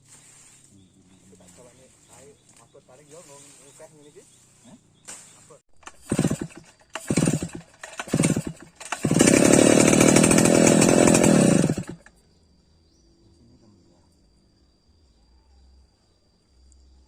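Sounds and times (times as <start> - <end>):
chainsaw engine revving: 5.8 - 12.1.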